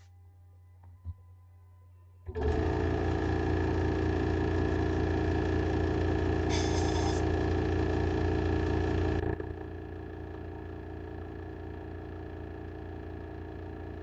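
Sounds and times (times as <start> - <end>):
mechanical hum: 0.0 - 14.0
hiss: 6.5 - 7.2.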